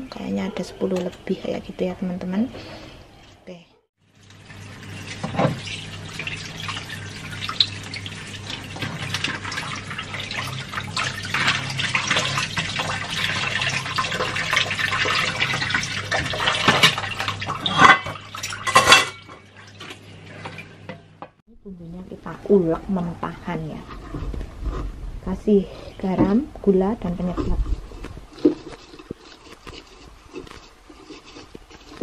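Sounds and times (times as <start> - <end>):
food rubbed and rinsed by hand: 1.4 - 18.7, 22.0 - 32.0
tap water running into sink: 4.2 - 18.6.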